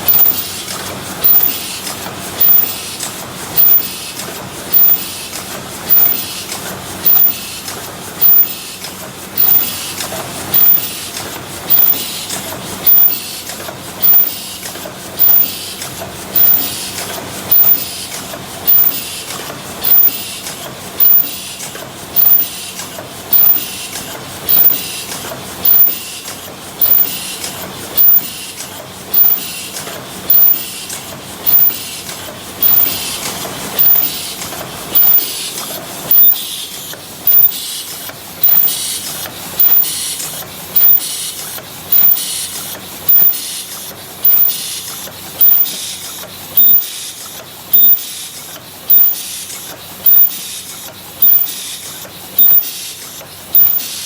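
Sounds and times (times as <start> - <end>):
loud machine beat: 0.0 - 1.7, 2.4 - 2.8, 3.6 - 3.9, 4.7 - 5.1, 5.9 - 6.4, 7.0 - 7.4, 8.2 - 8.7, 9.4 - 9.8, 10.5 - 11.0, 11.7 - 12.2, 15.2 - 15.6, 16.4 - 20.4, 21.0 - 22.7, 23.3 - 23.8, 24.5 - 24.9, 25.6 - 26.1, 26.8 - 27.3, 28.0 - 28.4, 29.1 - 29.6, 30.3 - 30.8, 31.4 - 31.9, 32.5 - 33.2, 33.8 - 35.4, 38.4 - 38.8, 39.6 - 40.0
cup forming machine running: 0.0 - 54.0.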